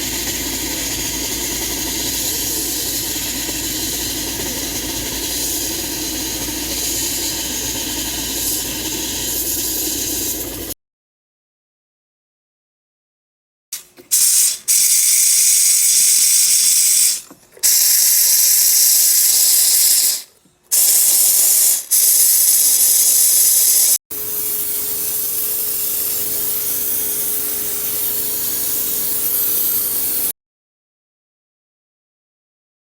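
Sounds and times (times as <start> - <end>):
hissing spray bursts: 0.0 - 10.8, 13.8 - 30.3.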